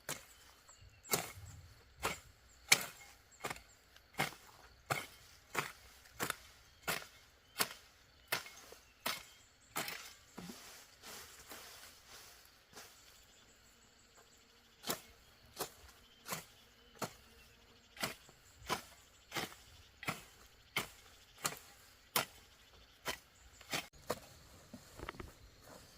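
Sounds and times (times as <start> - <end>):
hoe chopping into soil: 0.0 - 0.5, 1.1 - 10.6, 14.8 - 17.4, 18.0 - 25.3.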